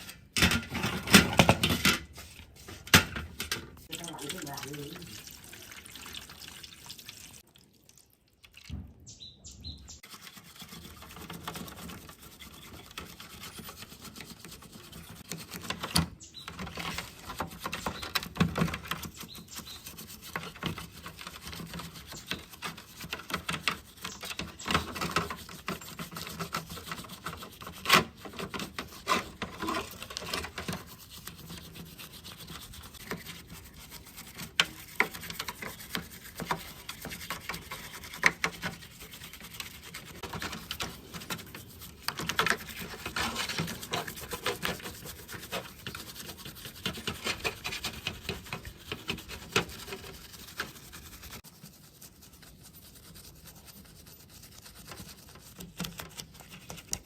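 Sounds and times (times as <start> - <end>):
hand rubbing on hard surface: 18.9 - 57.0.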